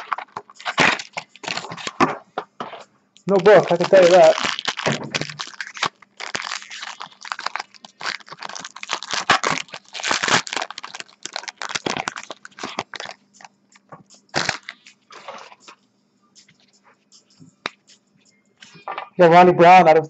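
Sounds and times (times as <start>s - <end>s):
plastic wrapper crinkling and tearing: 0.0s - 2.1s, 3.3s - 13.5s, 14.3s - 15.7s
cards rustling: 0.0s - 15.7s.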